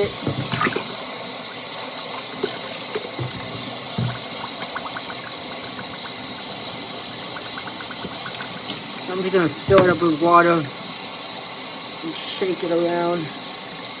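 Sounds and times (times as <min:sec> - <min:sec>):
tap water filling glass bottle: 0:00.0 - 0:10.5.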